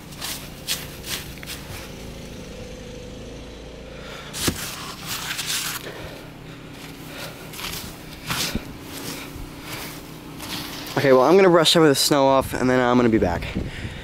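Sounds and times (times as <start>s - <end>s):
crunching and scraping in snow: 0.0s - 2.5s, 4.3s - 11.9s
steady low hum: 0.0s - 14.0s.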